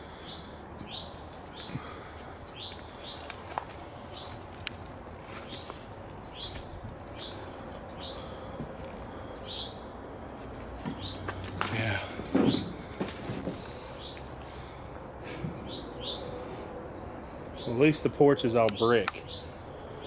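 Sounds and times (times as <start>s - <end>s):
bird chirping: 0.0s - 4.5s, 5.3s - 8.5s, 9.3s - 9.9s, 10.9s - 11.4s, 13.6s - 14.7s, 15.6s - 16.6s, 17.5s - 19.7s
high-pitched insect drone: 0.0s - 20.0s.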